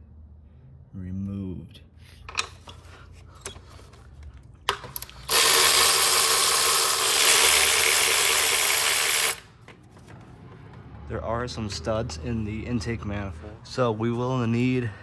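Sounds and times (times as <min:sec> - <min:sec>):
ratchet wrench clicking: 0:04.9 - 0:09.5.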